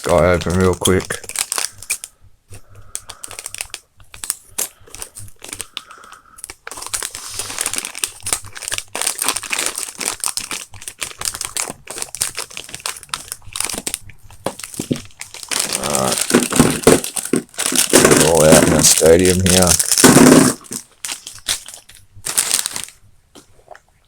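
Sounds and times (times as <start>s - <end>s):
plastic packaging crinkling: 0.0s - 23.0s
scissors snipping plastic: 14.5s - 21.7s.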